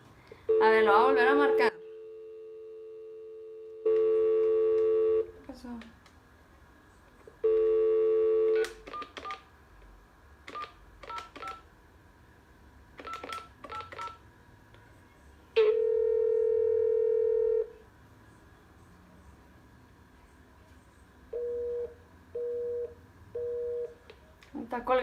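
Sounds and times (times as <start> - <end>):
steady telephone line tone: 0.5 - 5.4, 7.4 - 8.7, 15.6 - 17.8, 21.3 - 24.0
telephone dial tone: 3.6 - 5.3, 7.5 - 9.4.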